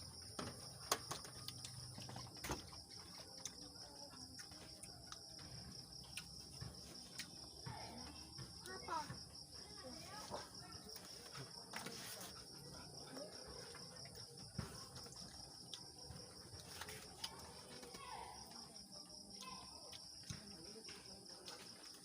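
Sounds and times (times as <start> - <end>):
crickets trilling: 0.0 - 22.0.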